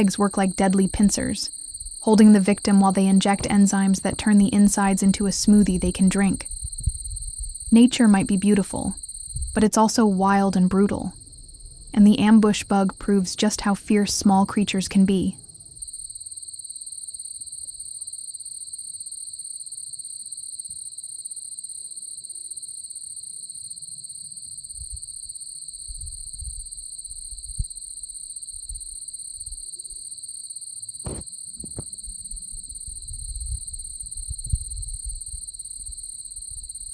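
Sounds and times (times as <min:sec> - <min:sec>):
cicada droning: 0:00.0 - 0:36.9
wind rumble on microphone: 0:05.2 - 0:07.7, 0:09.2 - 0:09.6, 0:25.9 - 0:27.8, 0:31.1 - 0:36.9.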